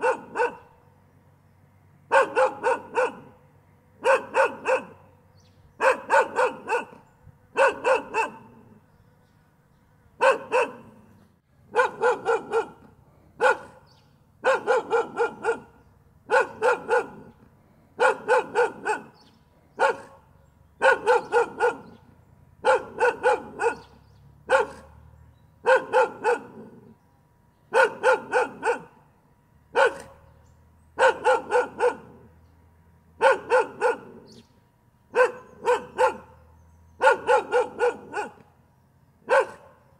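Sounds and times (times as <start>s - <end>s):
dog barking: 0.0s - 0.8s, 2.1s - 3.4s, 4.0s - 5.1s, 5.8s - 8.8s, 10.2s - 11.1s, 11.7s - 25.0s, 25.6s - 27.0s, 27.7s - 29.1s, 29.7s - 30.3s, 31.0s - 32.3s, 33.2s - 34.4s, 35.1s - 38.5s, 39.2s - 39.9s.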